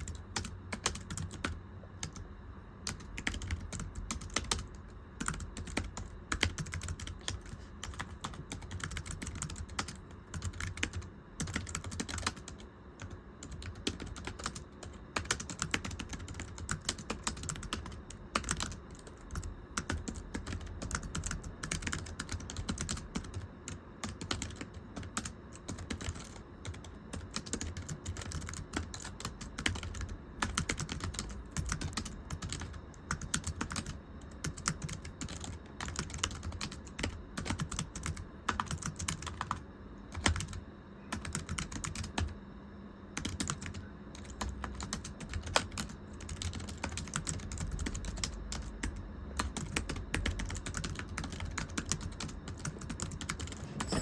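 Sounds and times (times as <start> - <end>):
typing on computer keyboard: 0.0 - 42.3, 43.2 - 54.0.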